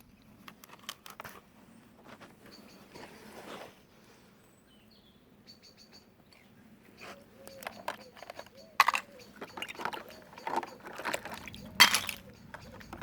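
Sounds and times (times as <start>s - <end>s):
faint bird chirps: 2.4s - 3.2s, 4.4s - 13.0s
small clicks and knocks: 7.4s - 13.0s.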